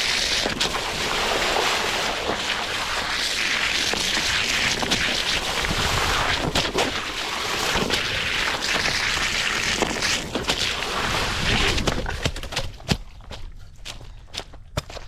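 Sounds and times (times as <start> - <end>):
water and mud spraying: 0.0 - 12.4
wind on microphone: 0.4 - 12.2.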